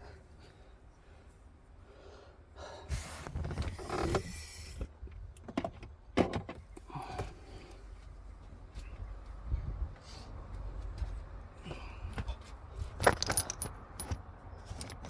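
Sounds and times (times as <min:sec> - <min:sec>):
hands rustling car parts: 0:11.0 - 0:15.0.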